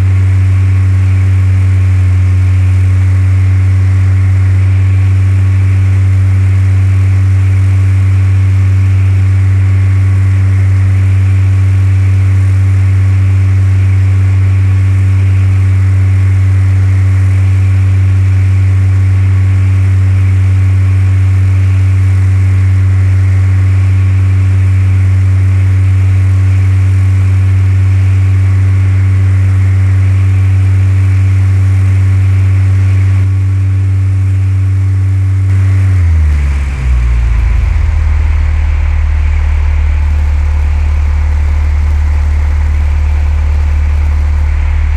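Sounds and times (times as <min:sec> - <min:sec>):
propeller plane engine droning: 0:32.7 - 0:44.9.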